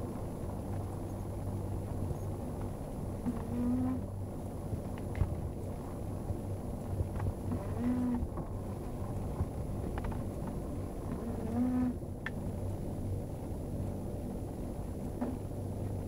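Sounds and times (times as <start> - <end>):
steady low hum: 0.0 - 16.0
cat snoring: 3.4 - 4.0, 11.2 - 12.0.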